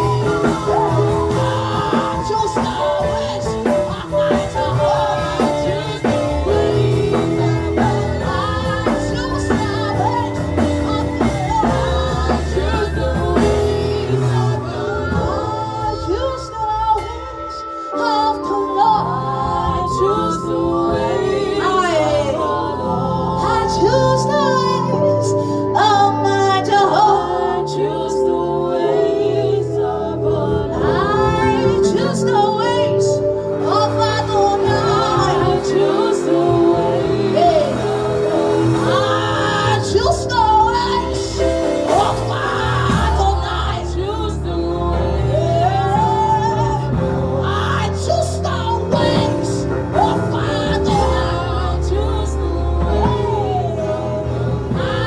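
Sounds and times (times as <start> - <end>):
drum kit beat: 0.0 - 15.6, 33.5 - 43.9
bass: 0.0 - 55.0
person singing worship song: 0.0 - 55.0
sustained chords: 0.0 - 55.0.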